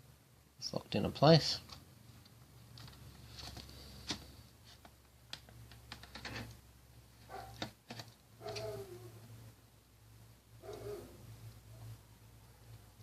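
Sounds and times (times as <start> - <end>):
plastic keyboard clicks and taps: 7.5 - 8.7.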